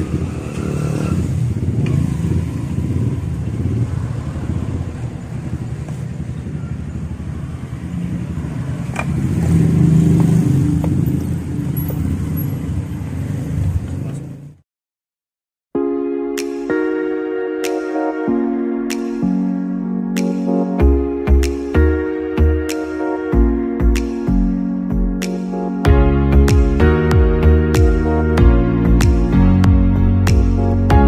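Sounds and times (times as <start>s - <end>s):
motorcycle engine running: 0.0s - 13.9s.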